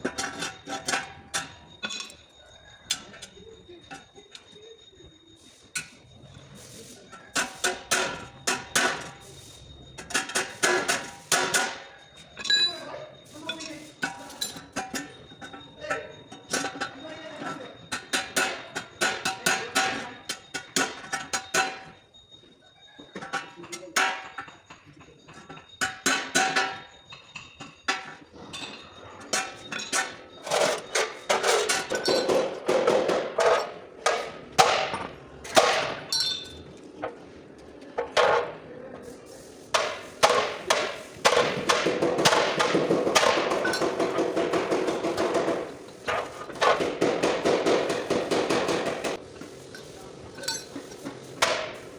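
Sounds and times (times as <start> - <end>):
hammer striking sheet metal: 31.0 - 36.0, 39.7 - 49.2, 50.4 - 51.9.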